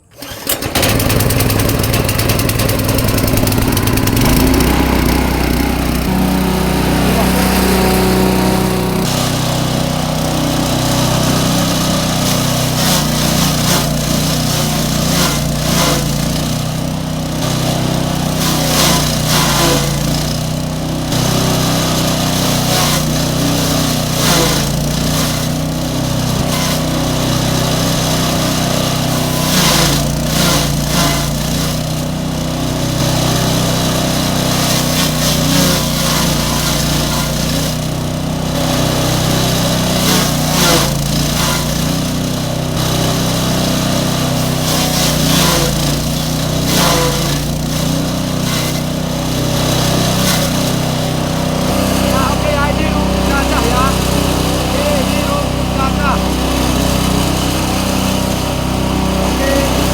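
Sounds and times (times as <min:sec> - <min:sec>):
grass chopper engine running: 0:00.0 - 0:59.9
short rushing surges: 0:00.2 - 0:11.0, 0:51.7 - 0:56.6.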